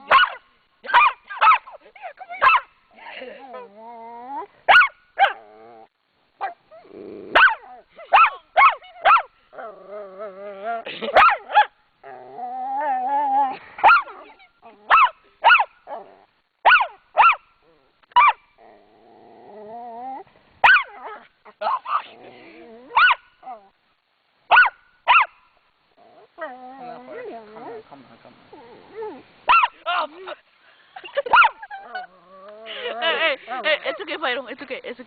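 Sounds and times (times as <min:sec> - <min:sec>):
small dog barking: 0:00.0 - 0:02.7, 0:04.7 - 0:05.4, 0:06.4 - 0:06.6, 0:07.3 - 0:09.3, 0:11.0 - 0:11.8, 0:13.8 - 0:17.5, 0:18.2 - 0:18.4, 0:20.6 - 0:22.2, 0:22.9 - 0:23.6, 0:24.5 - 0:25.4, 0:29.5 - 0:29.9, 0:31.2 - 0:32.1
dog growling: 0:03.1 - 0:04.6, 0:05.2 - 0:06.0, 0:06.7 - 0:08.0, 0:09.5 - 0:11.1, 0:12.0 - 0:14.9, 0:18.6 - 0:20.3, 0:22.0 - 0:23.7, 0:26.0 - 0:29.3, 0:31.6 - 0:34.0.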